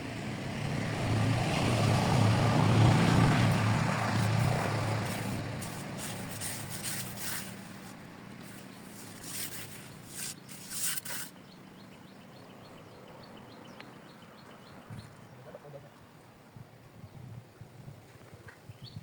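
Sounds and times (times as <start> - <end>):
vehicle engine: 0.0 - 11.4
brief scratchy noises: 4.2 - 11.3.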